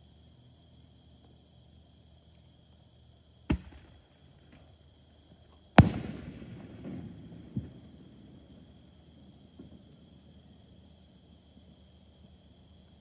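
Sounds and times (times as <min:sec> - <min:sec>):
fireworks bursting: 0:03.5 - 0:04.7, 0:05.8 - 0:10.0
rumbling echo: 0:05.8 - 0:08.7.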